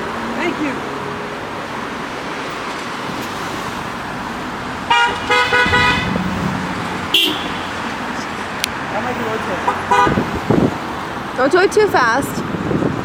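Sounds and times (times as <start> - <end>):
street traffic: 0.0 - 13.0
car horn tooting: 4.9 - 6.4, 7.1 - 8.0, 9.7 - 10.2.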